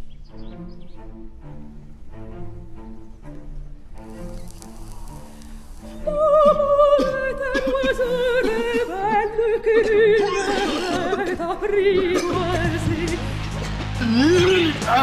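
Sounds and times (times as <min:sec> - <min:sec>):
quiet low instrumental music: 0:00.0 - 0:15.0
operatic voice singing: 0:06.0 - 0:15.0.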